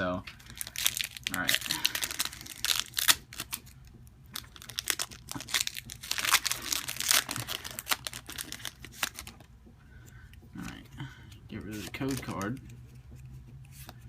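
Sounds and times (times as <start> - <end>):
foil wrapper crinkling and tearing: 0.4 - 3.8, 4.4 - 9.4.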